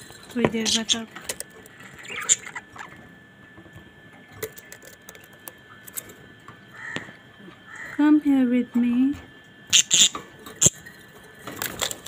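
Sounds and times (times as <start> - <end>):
beaks and feet scratching bars: 0.0 - 3.0, 9.7 - 12.0
parrot chirp: 1.8 - 3.0, 9.7 - 10.8.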